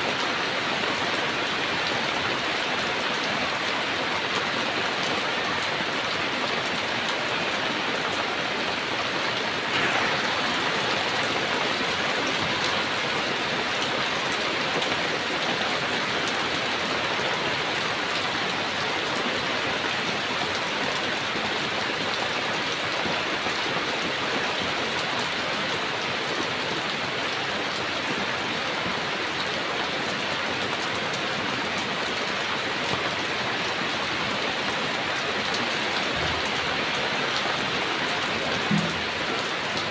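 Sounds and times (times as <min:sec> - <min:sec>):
heavy rain falling: 0:00.0 - 0:39.9
water splash: 0:09.7 - 0:11.0.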